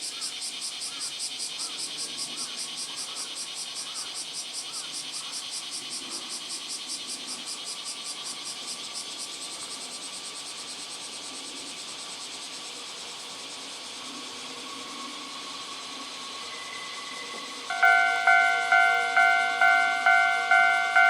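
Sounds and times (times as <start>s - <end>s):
insect chirring: 11.7s - 21.0s
steady high tone: 16.4s - 21.0s
level crossing alarm ringing: 16.6s - 21.0s.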